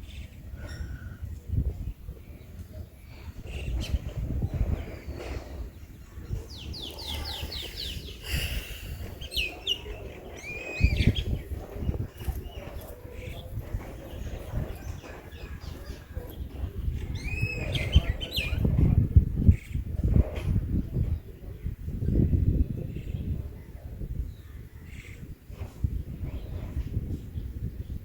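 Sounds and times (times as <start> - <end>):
songbirds calling: 0.0 - 28.0
low rumbling noise: 3.0 - 12.2.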